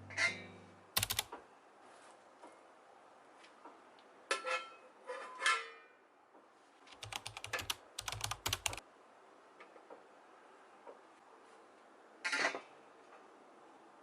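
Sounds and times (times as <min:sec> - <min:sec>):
rapid light clicking: 0:01.0 - 0:01.3, 0:06.9 - 0:08.8.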